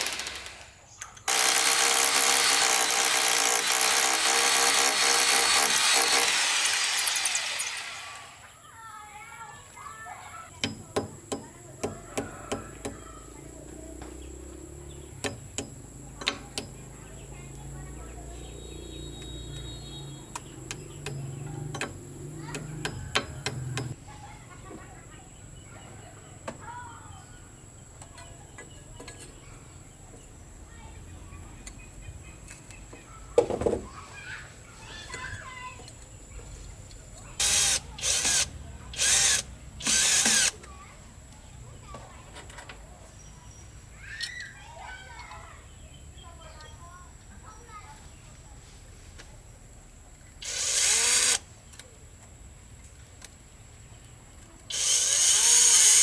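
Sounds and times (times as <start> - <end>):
knocks and clicks: 20.4 - 24.0.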